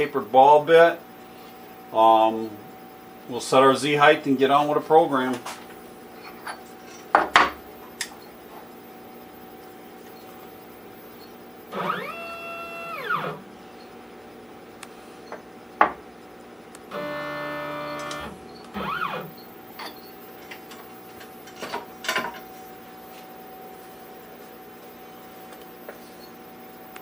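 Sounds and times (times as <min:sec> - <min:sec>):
stepper motor whine: 0:08.2 - 0:20.3.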